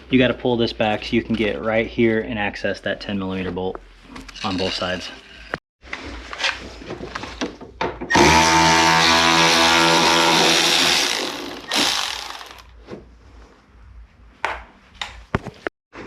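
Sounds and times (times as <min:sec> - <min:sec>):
power tool motor running: 0:08.1 - 0:12.7.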